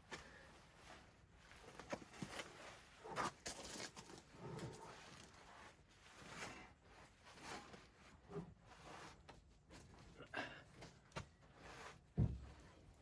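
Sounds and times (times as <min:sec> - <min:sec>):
faint rustling and scraping: 0:00.0 - 0:13.0.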